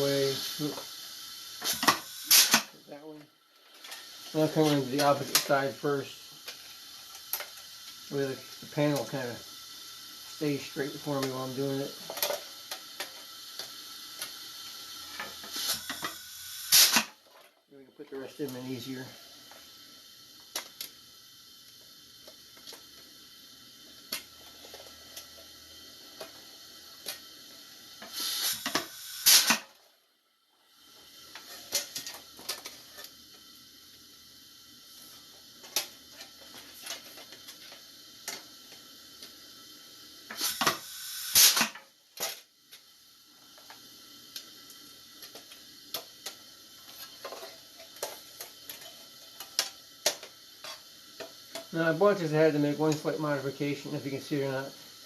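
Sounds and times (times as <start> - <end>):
air riveter hiss bursts: 0.0 - 2.8, 3.8 - 17.2, 18.3 - 29.8, 36.6 - 41.9
faint air leak hiss: 0.0 - 55.0.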